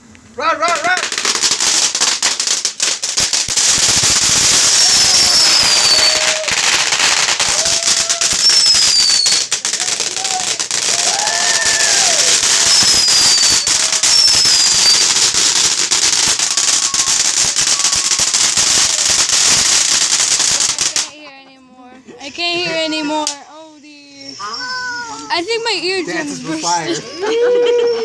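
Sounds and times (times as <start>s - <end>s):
fireworks crackling: 0.0s - 21.4s, 22.3s - 28.0s
falling firework whistles: 1.0s - 21.1s, 24.3s - 25.3s.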